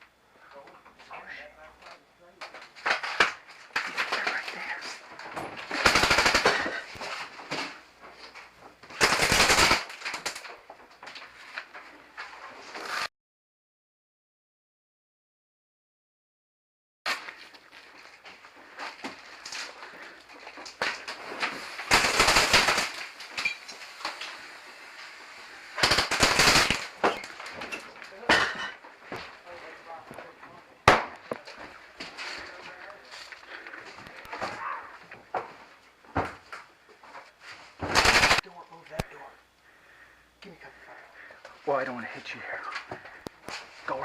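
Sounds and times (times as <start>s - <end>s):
airsoft gun automatic fire: 5.7s - 6.9s, 9.0s - 10.4s, 21.9s - 23.2s, 25.8s - 27.0s, 37.9s - 38.4s
faint scattered shots: 25.8s - 27.2s, 37.8s - 38.4s.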